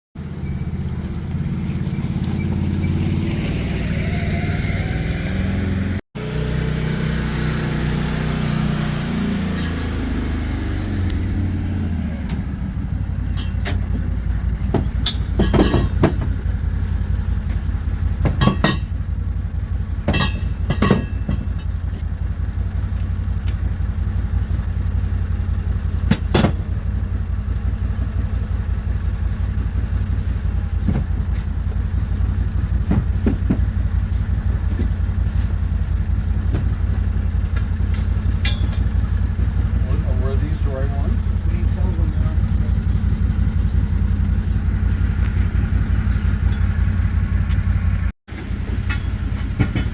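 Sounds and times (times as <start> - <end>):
engine droning: 0.2 - 49.9
sharp metallic knocks: 13.3 - 16.4, 18.2 - 19.0, 20.0 - 21.8, 26.1 - 26.7, 37.6 - 39.0.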